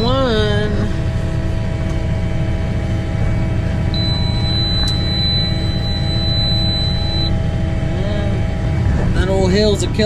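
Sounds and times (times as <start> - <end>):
tractor engine droning: 0.0 - 10.0
thin high beep: 4.0 - 7.4.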